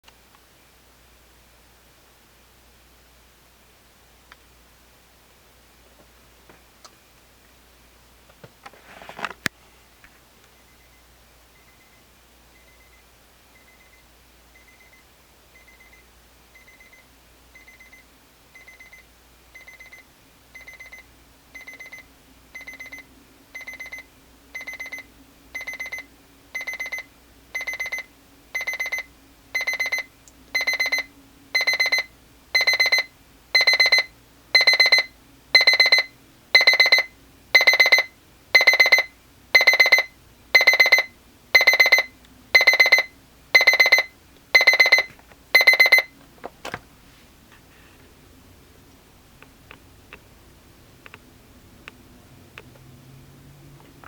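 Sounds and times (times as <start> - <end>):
alarm clock beeping: 19.6 - 20.0, 20.6 - 21.0, 21.6 - 22.0, 22.6 - 23.0, 23.6 - 24.0, 24.6 - 25.0, 25.6 - 26.0, 26.6 - 46.1.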